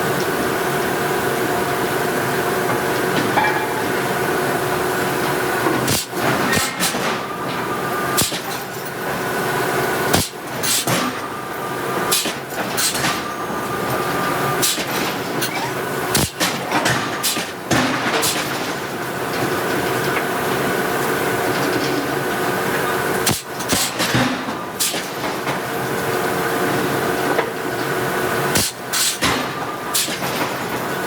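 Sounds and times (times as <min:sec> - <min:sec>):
shop machinery hum: 0:00.0 - 0:31.0
forging hammer striking steel: 0:05.9 - 0:07.3, 0:08.2 - 0:08.8, 0:10.2 - 0:11.2, 0:14.6 - 0:17.6, 0:23.3 - 0:24.1.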